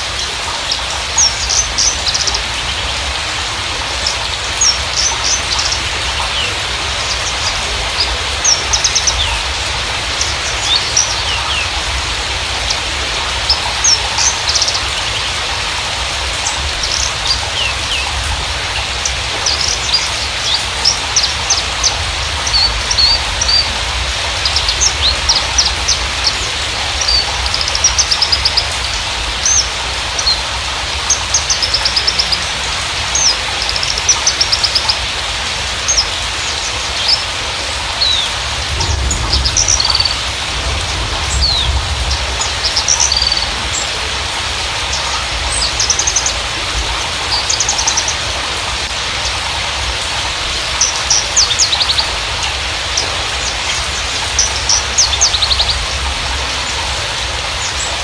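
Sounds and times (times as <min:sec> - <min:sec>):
bird singing trills and chirps: 0:00.0 - 0:15.7, 0:16.4 - 0:35.1, 0:35.7 - 0:44.1, 0:44.8 - 0:49.4, 0:50.5 - 0:56.5
steady hiss: 0:00.0 - 0:58.0.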